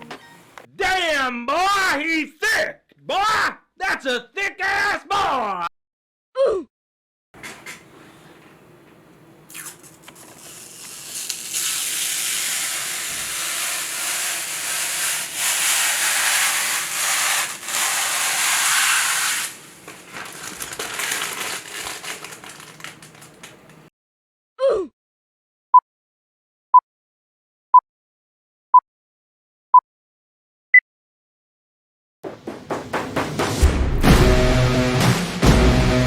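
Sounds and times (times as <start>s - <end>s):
loud steady hiss: 10.3s - 22.1s.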